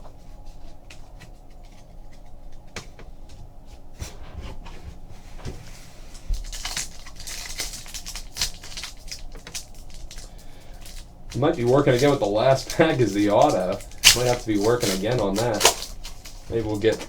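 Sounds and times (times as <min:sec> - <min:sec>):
foil wrappers rustling: 0:00.0 - 0:17.0
cards clicking and tapping: 0:06.3 - 0:17.0.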